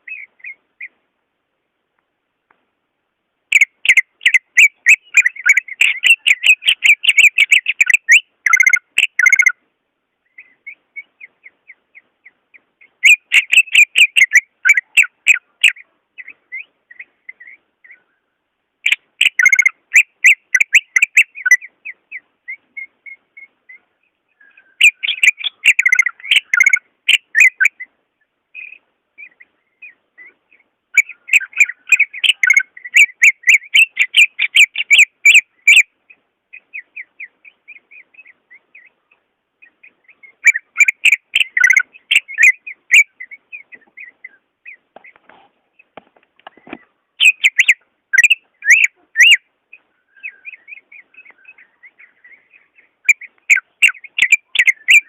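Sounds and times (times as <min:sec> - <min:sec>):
bird singing chattering whistles: 0:03.5 - 0:09.6, 0:10.3 - 0:18.1, 0:18.8 - 0:27.9, 0:28.6 - 0:35.9, 0:39.6 - 0:45.2, 0:47.2 - 0:55.0.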